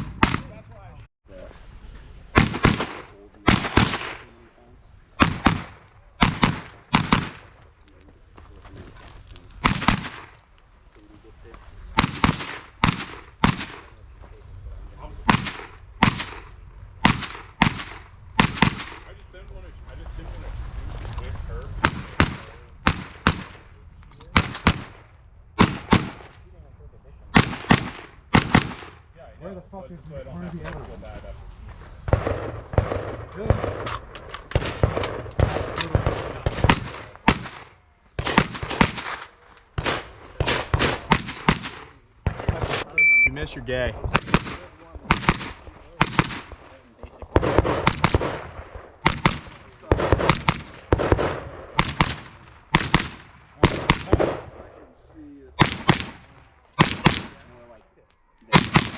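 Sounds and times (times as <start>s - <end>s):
rifle shots with echo: 0.0s - 0.8s, 2.3s - 7.7s, 9.6s - 10.4s, 11.9s - 14.0s, 15.1s - 19.2s, 21.7s - 26.5s, 27.3s - 29.1s, 32.0s - 43.0s, 44.0s - 54.9s, 55.6s - 57.8s, 58.5s - 58.9s.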